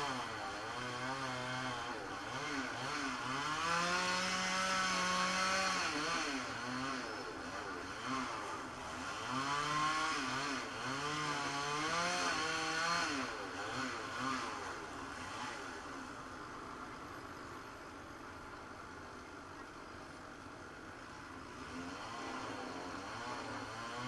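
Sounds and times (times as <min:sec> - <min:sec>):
small petrol engine revving: 0:00.0 - 0:16.0, 0:21.5 - 0:24.0.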